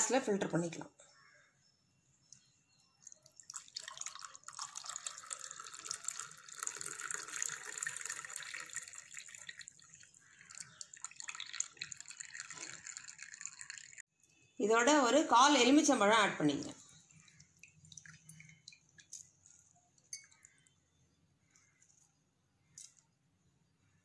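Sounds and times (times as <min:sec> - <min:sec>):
tea pouring into a glass: 0:02.4 - 0:14.1, 0:16.8 - 0:20.8.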